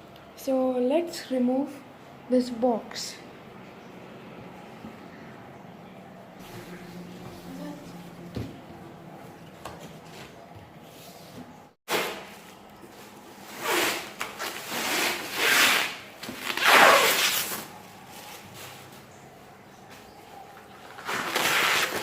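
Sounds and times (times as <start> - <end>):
cardboard packaging being pulled: 13.4 - 18.8, 21.0 - 22.0.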